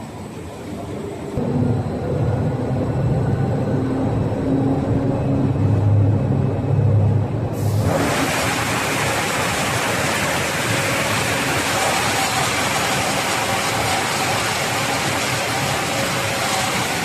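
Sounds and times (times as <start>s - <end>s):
furnace blown air rushing: 7.5s - 17.0s.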